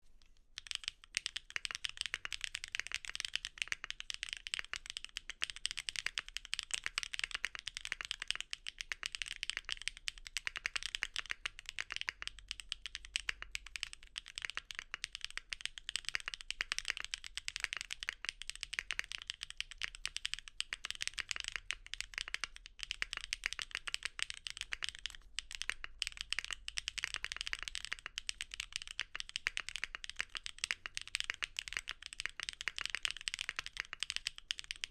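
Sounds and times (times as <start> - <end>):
fast typing on mechanical keyboard: 0.6 - 34.9.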